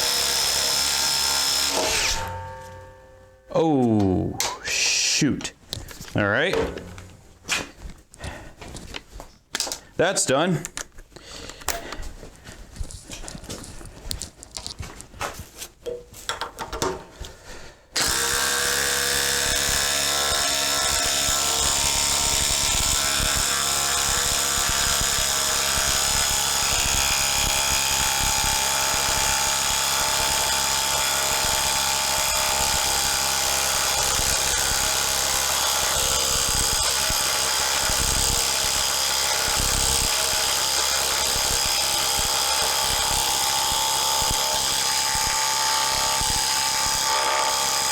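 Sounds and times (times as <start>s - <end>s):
impact driver rattling: 6.5s - 7.3s.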